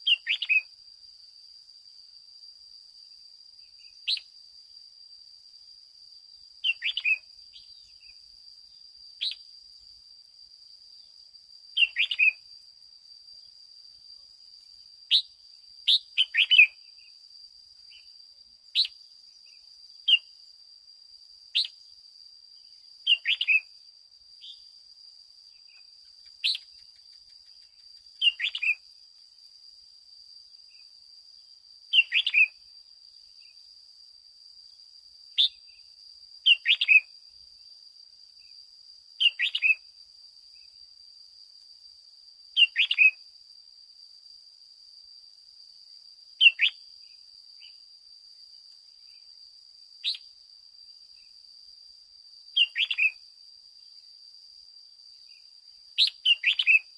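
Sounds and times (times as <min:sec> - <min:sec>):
bird chirping: 0:00.0 - 0:00.7, 0:06.6 - 0:08.2, 0:11.8 - 0:12.4, 0:15.9 - 0:17.2, 0:22.6 - 0:23.7, 0:25.5 - 0:28.8, 0:31.9 - 0:32.6, 0:36.5 - 0:37.1, 0:39.2 - 0:39.8, 0:42.6 - 0:43.2, 0:46.4 - 0:46.8, 0:52.6 - 0:53.2, 0:56.0 - 0:56.9.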